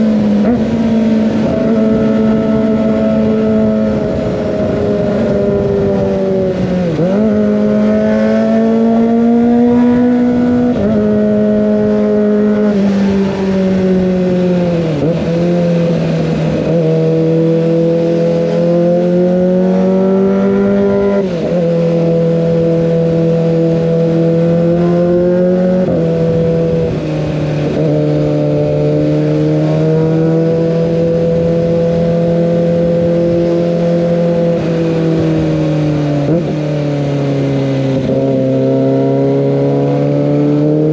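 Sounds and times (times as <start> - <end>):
motorcycle engine at high revs: 0.0 - 40.9.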